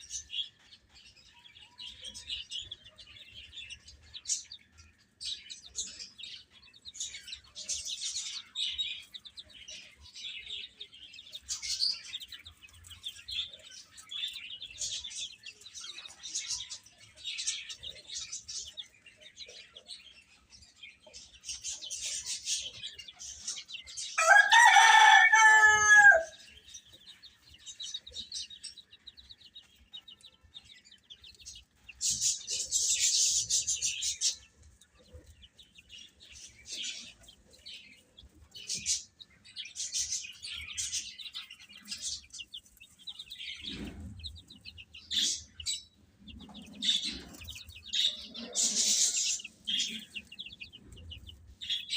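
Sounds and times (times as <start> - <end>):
baby chicks chirping: 0.0 - 51.9
rooster crowing: 24.2 - 26.5.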